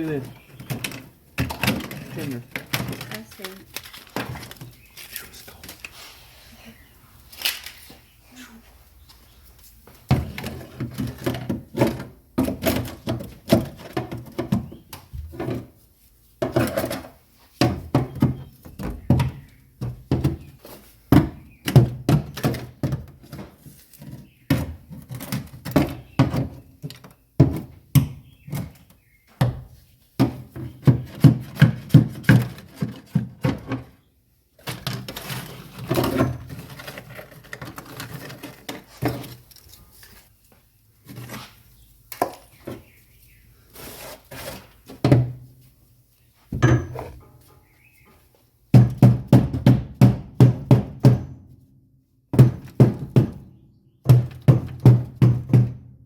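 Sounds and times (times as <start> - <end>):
rubber mallet knocking: 46.6 - 47.2.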